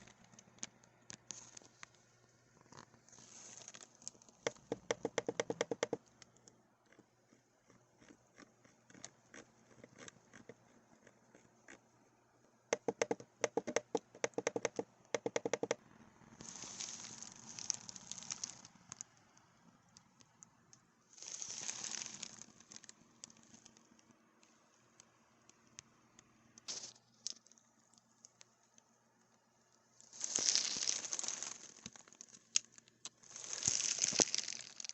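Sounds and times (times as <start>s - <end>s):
mechanical keyboard typing: 4.5s - 7.0s, 12.8s - 15.8s.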